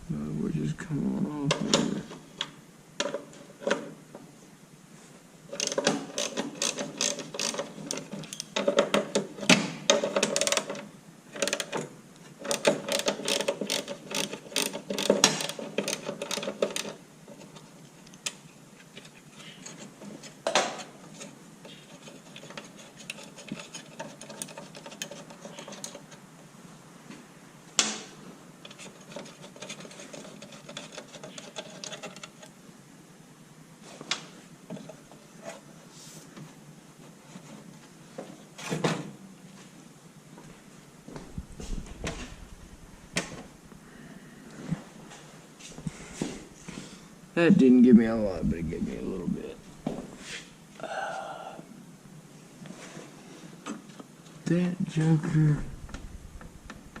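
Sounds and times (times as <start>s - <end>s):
ratchet wrench clicking: 12.5s - 15.2s.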